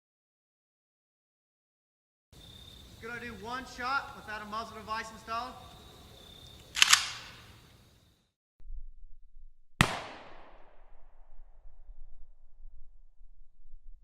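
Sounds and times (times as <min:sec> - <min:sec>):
rifle shots with echo: 0:06.8 - 0:07.5, 0:09.8 - 0:10.6.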